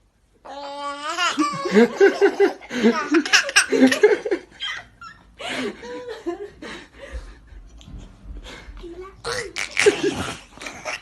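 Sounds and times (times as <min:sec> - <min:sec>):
people laughing: 0:01.4 - 0:07.4.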